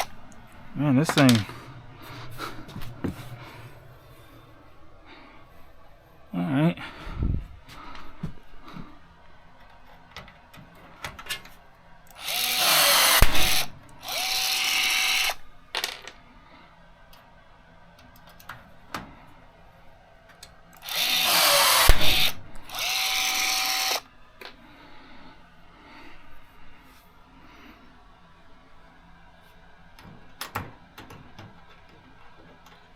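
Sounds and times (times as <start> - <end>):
rivet puller air hiss: 12.1 - 15.4, 20.8 - 24.0
tool resetting with faint whine: 12.1 - 15.4, 20.8 - 24.0.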